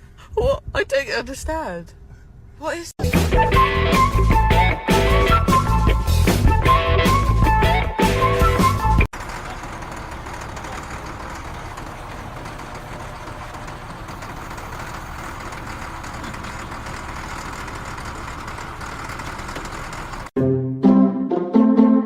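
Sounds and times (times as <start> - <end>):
rock music: 3.0 - 9.1
steady machine noise: 9.2 - 20.3.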